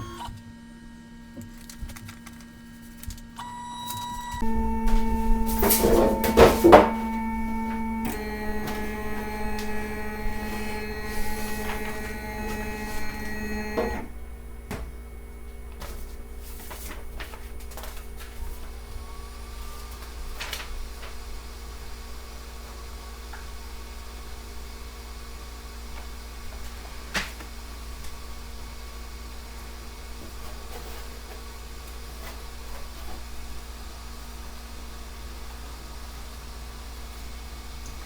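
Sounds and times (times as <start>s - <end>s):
stepper motors whining: 0.0s - 0.4s, 2.9s - 14.2s
printer clattering: 4.3s - 14.3s.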